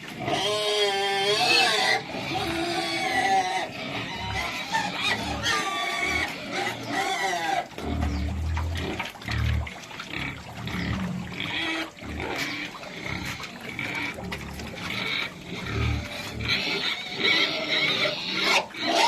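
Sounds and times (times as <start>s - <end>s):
high-pitched pig calls: 0.0s - 19.0s
pigs grunting: 0.0s - 19.0s.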